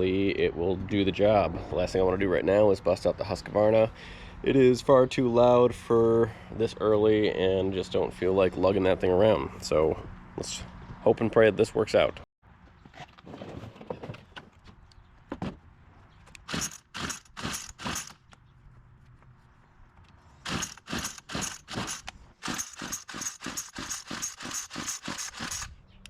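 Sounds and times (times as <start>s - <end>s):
string trimmer pull-start rasping: 16.4s - 18.2s, 20.4s - 25.8s.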